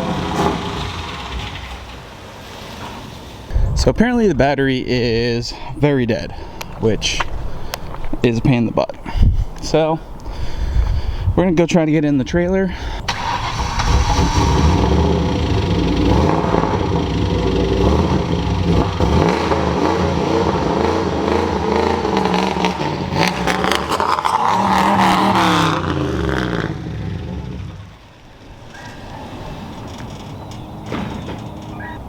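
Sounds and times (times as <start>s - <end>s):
car engine revving with knock: 0.0s - 2.0s, 13.5s - 28.0s.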